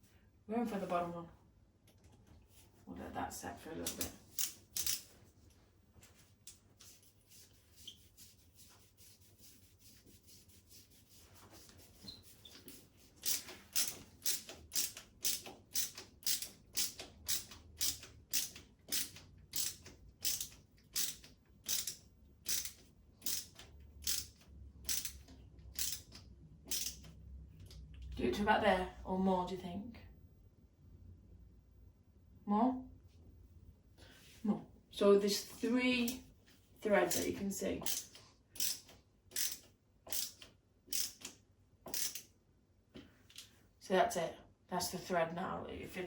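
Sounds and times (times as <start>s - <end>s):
screwdriver turning screw scraping: 3.8s - 5.1s, 12.0s - 27.1s, 37.1s - 42.3s.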